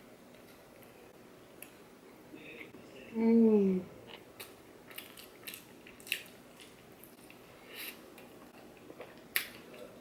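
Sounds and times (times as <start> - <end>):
person chewing food: 4.1 - 10.0.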